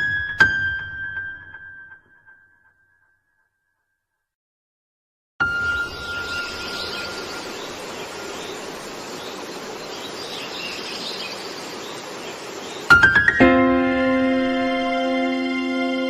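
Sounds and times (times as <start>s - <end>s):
steady hiss: 6.1s - 13.2s
music with rising notes: 13.4s - 16.0s.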